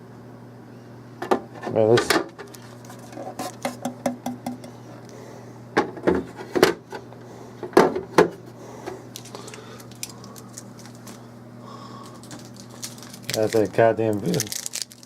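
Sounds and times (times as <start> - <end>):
refrigerator hum: 0.0 - 15.0
items clicking and rattling: 12.0 - 15.0.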